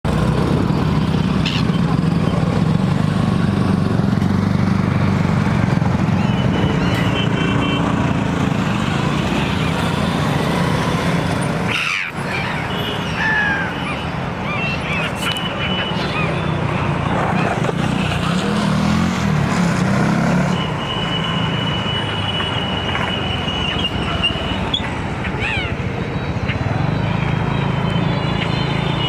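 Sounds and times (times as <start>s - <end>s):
loud low engine rumble: 0.1s - 29.0s
gull calls: 11.6s - 17.7s, 23.6s - 25.9s.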